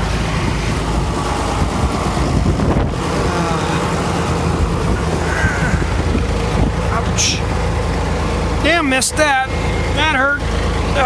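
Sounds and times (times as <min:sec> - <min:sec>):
tractor engine idling: 0:00.0 - 0:11.0
wind blowing across microphone: 0:00.3 - 0:03.3.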